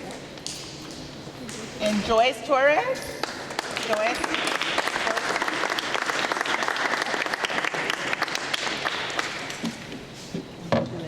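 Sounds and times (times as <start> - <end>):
audience clapping: 3.2 - 9.8.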